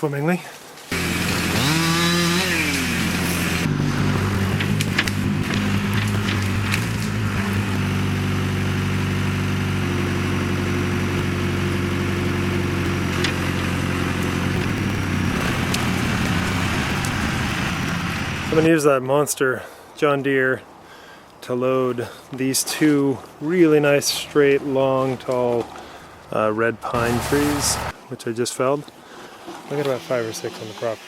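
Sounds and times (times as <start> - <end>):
tractor engine running: 0.9 - 18.7, 24.3 - 27.9.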